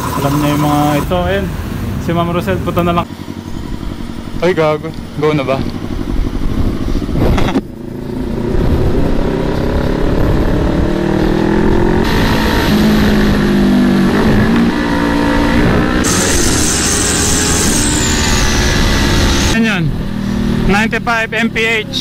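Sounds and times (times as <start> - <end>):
motorcycle engine accelerating: 0.0 - 22.0
wind noise: 5.0 - 20.2.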